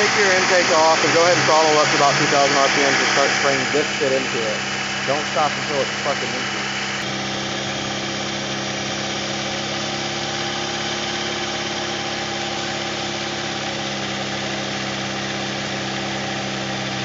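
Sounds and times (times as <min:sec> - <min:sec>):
car engine running steadily: 0:00.0 - 0:17.0.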